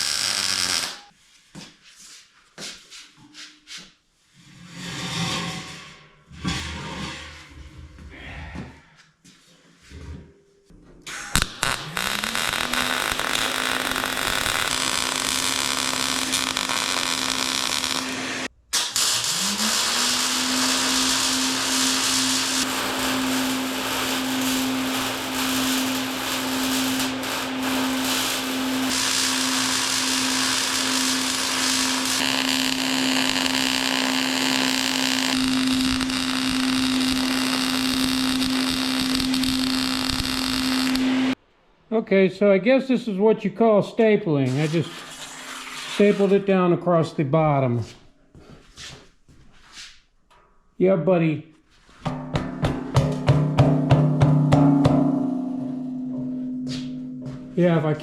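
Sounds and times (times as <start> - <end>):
angle grinder grinding steel: 0.0 - 1.1, 11.2 - 41.4.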